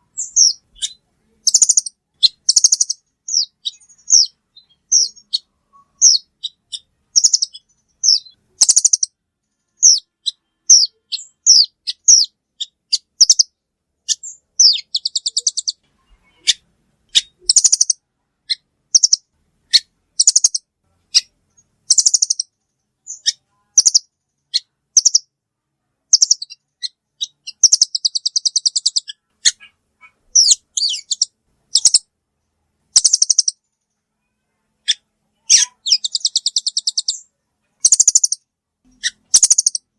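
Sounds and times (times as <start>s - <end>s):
bird chip calls: 0.2s - 9.2s, 9.8s - 21.3s, 21.9s - 22.5s, 26.1s - 32.1s, 33.0s - 33.6s, 34.8s - 39.9s
bird trills: 0.2s - 21.3s, 21.9s - 25.3s, 26.1s - 32.1s, 33.0s - 39.9s.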